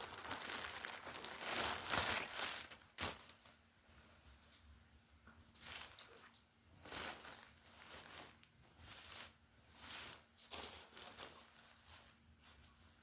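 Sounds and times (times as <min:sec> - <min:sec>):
plastic bag crinkling: 0:00.0 - 0:03.5, 0:05.6 - 0:12.2.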